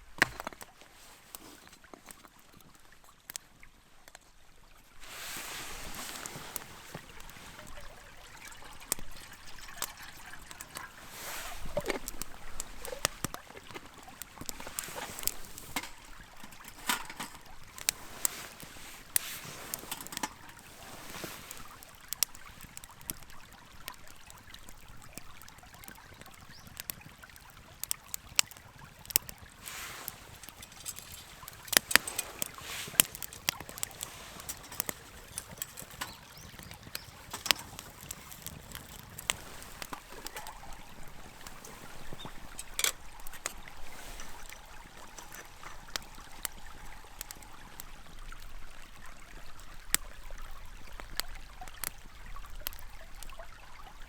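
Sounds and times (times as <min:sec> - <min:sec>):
wood fire crackling and popping: 0:00.0 - 0:03.4, 0:05.0 - 0:53.9.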